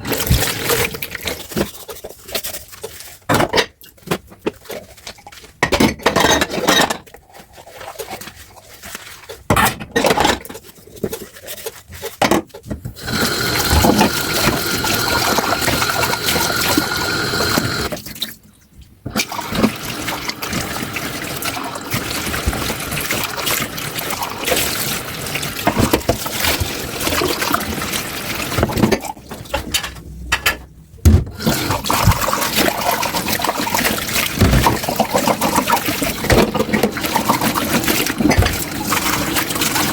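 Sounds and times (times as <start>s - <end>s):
tap water running into sink: 13.0s - 18.2s, 19.1s - 29.6s, 31.3s - 39.9s.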